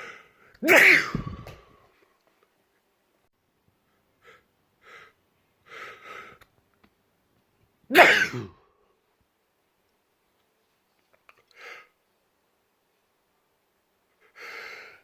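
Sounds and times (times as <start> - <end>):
man sneezing: 0.0 - 1.7, 7.9 - 8.6
man gasping inhales: 0.0 - 1.9.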